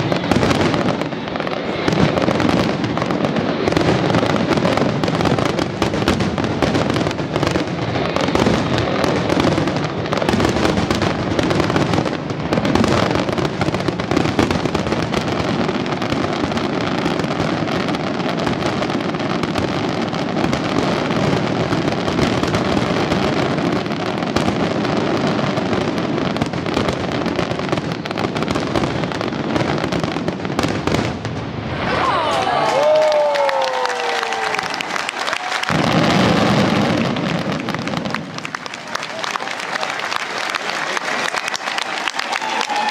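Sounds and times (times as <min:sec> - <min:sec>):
fireworks bangs and crackle: 0:00.0 - 0:42.9.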